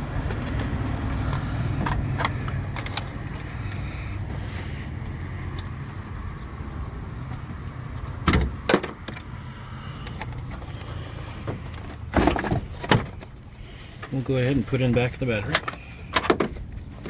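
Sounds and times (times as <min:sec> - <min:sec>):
tools clanking in engine bay: 0:10.0 - 0:17.0.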